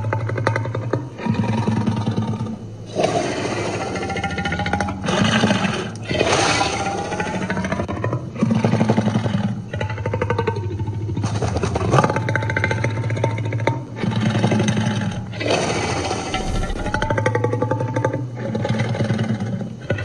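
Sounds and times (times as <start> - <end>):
dragon roars and growls: 16.3 - 17.2.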